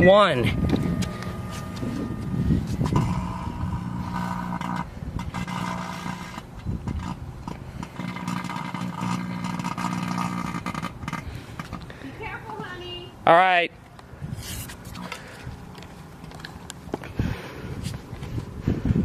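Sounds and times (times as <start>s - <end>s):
microwave oven humming: 0.0s - 4.6s.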